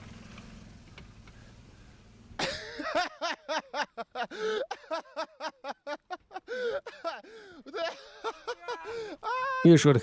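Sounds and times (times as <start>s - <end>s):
man laughing hard: 2.4s - 10.0s.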